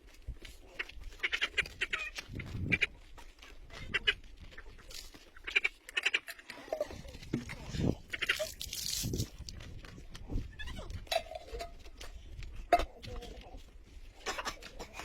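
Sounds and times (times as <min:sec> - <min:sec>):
farm animals calling: 0:00.4 - 0:07.1.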